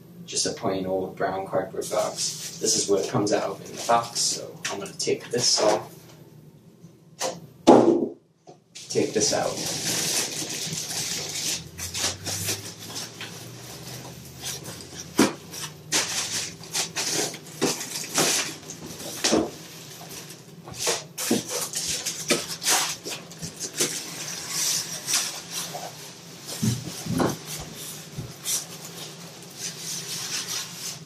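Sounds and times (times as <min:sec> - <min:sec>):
packaging rustling and crinkling: 0:08.8 - 0:31.0.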